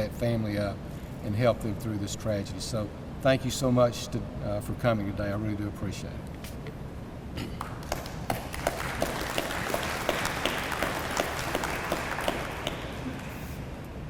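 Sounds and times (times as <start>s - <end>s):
audience applauding: 7.6s - 13.7s.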